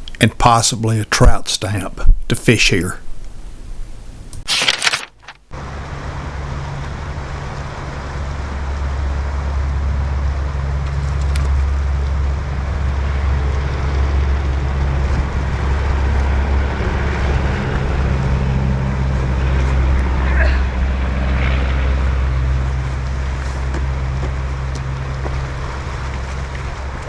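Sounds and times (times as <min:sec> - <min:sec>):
wind rumbling on microphone: 0:05.6 - 0:27.0
creek water rushing: 0:18.3 - 0:27.0.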